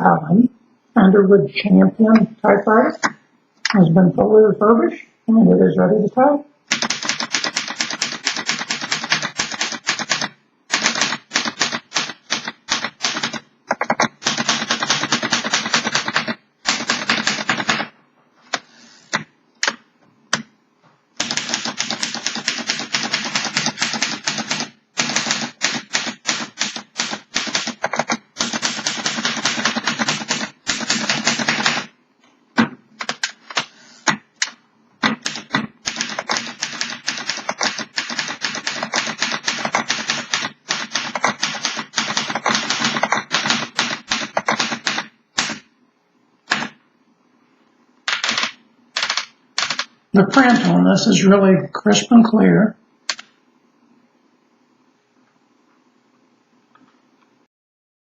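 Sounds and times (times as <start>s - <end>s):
manual typewriter typing: 6.7s - 17.9s, 21.2s - 31.9s, 33.0s - 33.7s, 34.4s - 45.6s, 48.1s - 50.7s.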